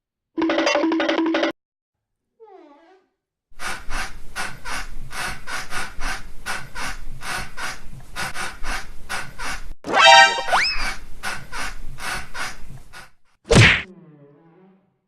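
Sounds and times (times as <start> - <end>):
fast rhythmic panting: 3.6 - 9.8
cartoon falling pitched whine: 9.9 - 10.9.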